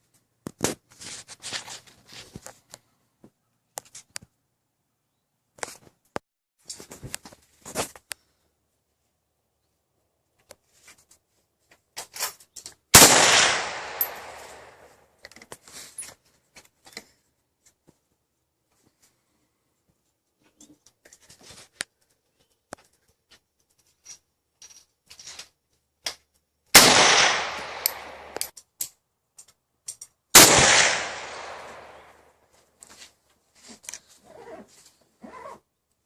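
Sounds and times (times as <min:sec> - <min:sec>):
loud rifle shot: 0:12.9 - 0:14.8, 0:26.7 - 0:28.4, 0:30.4 - 0:32.1.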